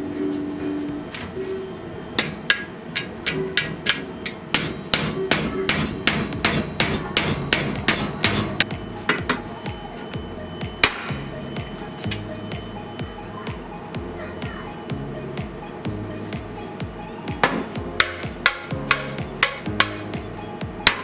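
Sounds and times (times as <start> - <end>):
hammer striking: 2.2 - 9.8, 10.8 - 11.3, 17.4 - 20.2.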